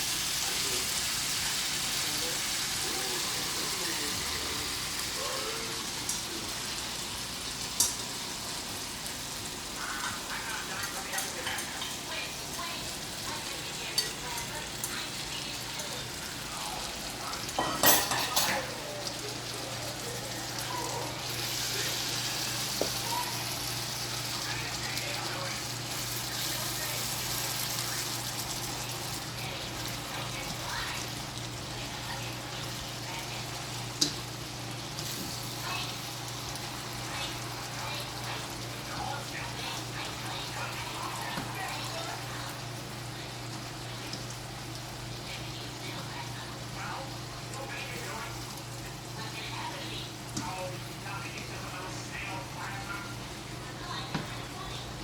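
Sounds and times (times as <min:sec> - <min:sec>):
food sizzling in a pan: 0:00.0 - 0:55.0
water running: 0:00.0 - 0:55.0.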